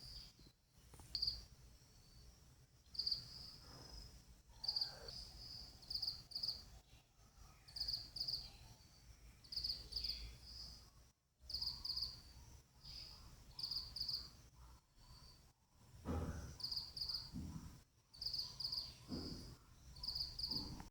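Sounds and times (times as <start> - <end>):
cricket chirping: 1.0 - 6.6, 7.7 - 10.8, 11.5 - 14.4, 18.1 - 20.8.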